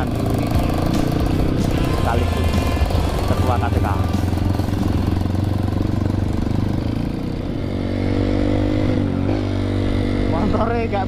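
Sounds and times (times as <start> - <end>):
dirt bike engine running: 0.0 - 11.0.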